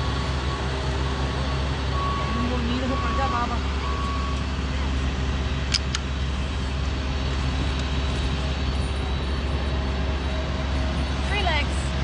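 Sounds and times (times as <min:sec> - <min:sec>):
low engine hum: 0:00.0 - 0:12.0
sharp clicks: 0:05.7 - 0:06.1.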